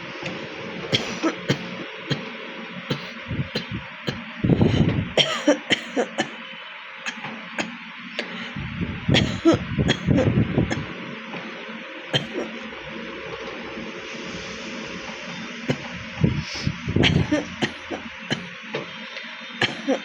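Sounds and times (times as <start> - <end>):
person coughing: 1.0 - 2.2, 2.9 - 6.4, 7.1 - 7.7, 9.2 - 10.8, 12.2 - 12.6, 16.5 - 18.4, 19.6 - 20.0
throat clearing: 1.0 - 2.2, 2.9 - 6.3, 9.2 - 10.8, 12.2 - 12.6, 17.0 - 18.4, 19.6 - 20.0.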